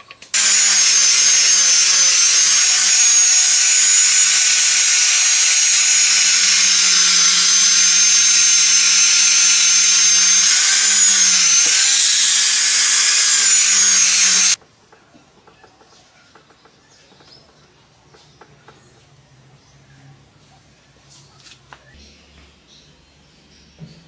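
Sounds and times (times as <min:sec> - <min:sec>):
power tool whining: 0:00.4 - 0:14.6.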